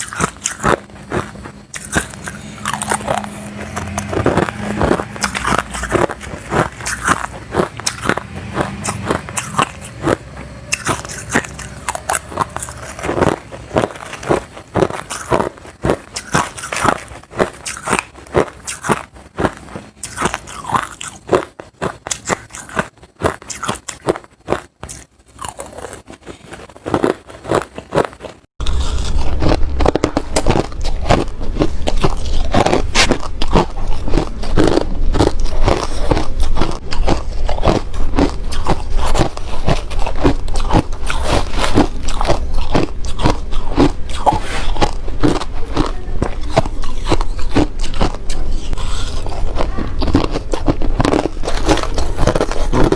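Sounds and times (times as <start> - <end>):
low hum: 0.0 - 20.5, 28.6 - 52.9
crushed ice crunching: 0.0 - 52.9.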